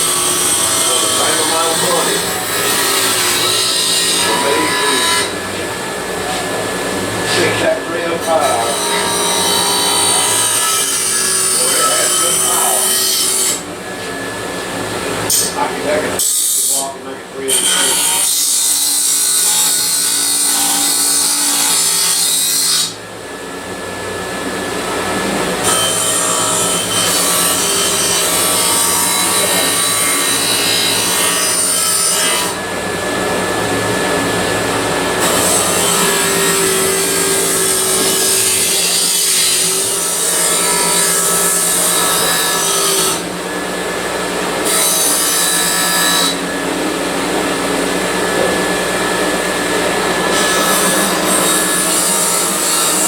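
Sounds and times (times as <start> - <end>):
power tool motor running: 0.0 - 14.2, 25.2 - 53.0.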